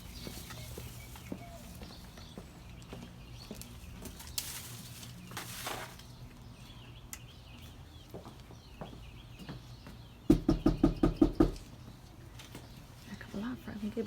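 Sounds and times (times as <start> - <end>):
faint birdsong: 0.0 - 14.0
knocks on a door: 10.3 - 11.6.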